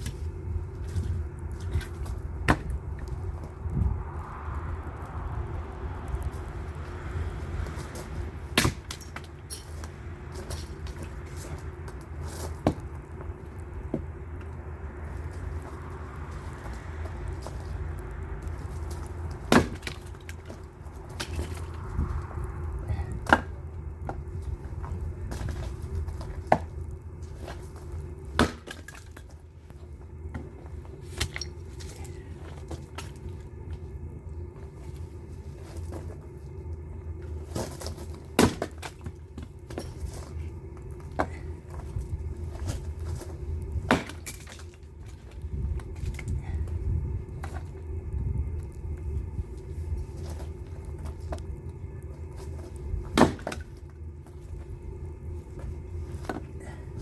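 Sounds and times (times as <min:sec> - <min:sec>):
wood cracking: 0:00.0 - 0:33.8, 0:37.2 - 0:47.8, 0:49.6 - 0:57.0
steady low hum: 0:00.0 - 0:57.0
steady low rumble: 0:00.0 - 0:57.0
axe striking wood: 0:08.5 - 0:09.3, 0:19.5 - 0:20.2, 0:28.4 - 0:29.0, 0:38.4 - 0:38.8, 0:43.9 - 0:44.5, 0:53.1 - 0:53.7.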